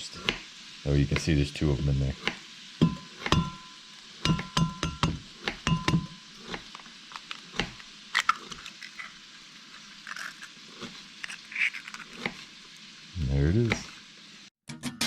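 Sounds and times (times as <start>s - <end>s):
eggs crackling in a pan: 0.0s - 14.6s.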